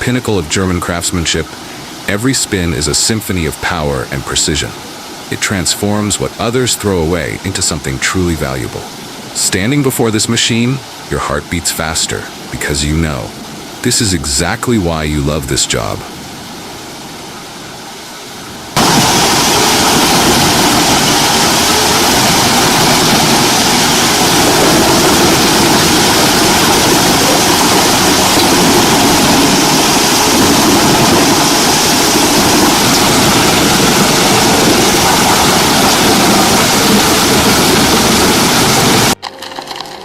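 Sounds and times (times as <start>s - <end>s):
faint hiss: 0.0s - 39.1s
wood chipper running: 18.8s - 40.0s.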